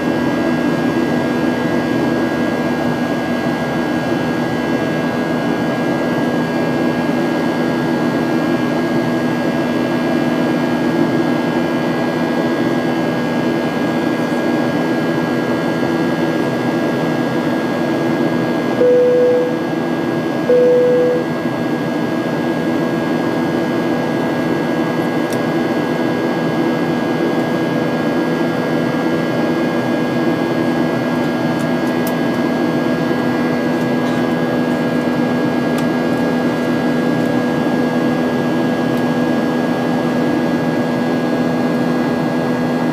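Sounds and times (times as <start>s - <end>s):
airplane cabin drone: 0.0s - 42.9s.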